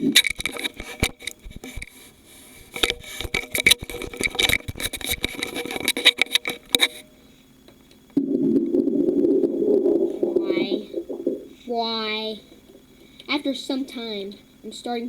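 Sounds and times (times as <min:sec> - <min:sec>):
sharp clicks and taps: 0:00.0 - 0:02.0, 0:02.6 - 0:07.0
faint steady tone: 0:00.0 - 0:15.0.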